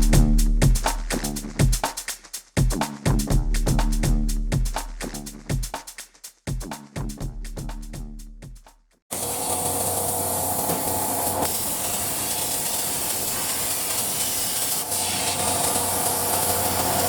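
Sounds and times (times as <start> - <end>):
plasma torch cutting steel: 9.1 - 17.0.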